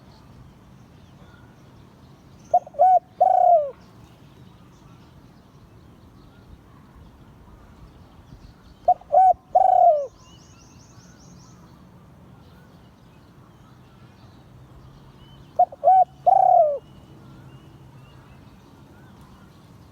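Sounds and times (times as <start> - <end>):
dove cooing: 2.5 - 3.8, 8.8 - 10.2, 15.6 - 16.9.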